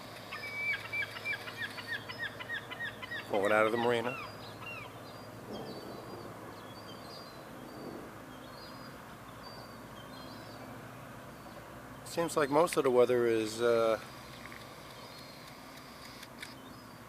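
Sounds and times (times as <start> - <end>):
small birds chirping: 0.3 - 12.9, 14.0 - 17.0
low background rumble: 4.2 - 10.8.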